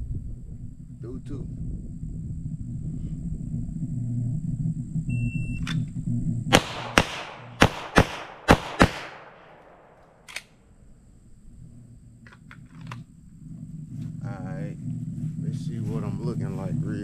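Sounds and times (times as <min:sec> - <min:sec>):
pistol shots: 0:06.5 - 0:10.5
sharp click: 0:09.2 - 0:10.5.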